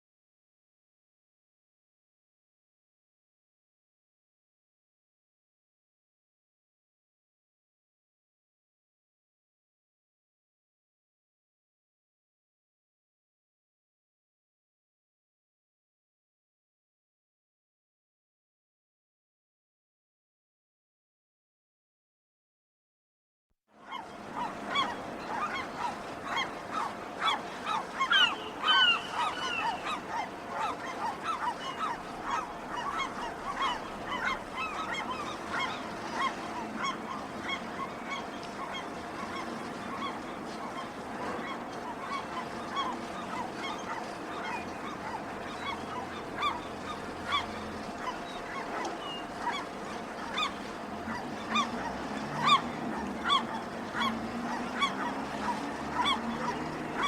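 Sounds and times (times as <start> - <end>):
gulls calling: 23.8 - 57.0.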